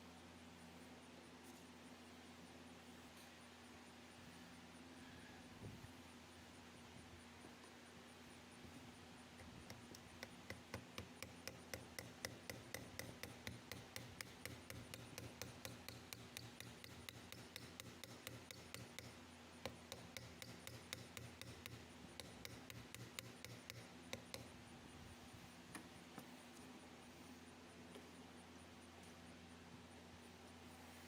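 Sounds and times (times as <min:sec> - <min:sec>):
hand tool clicking strokes: 0:09.4 - 0:24.4.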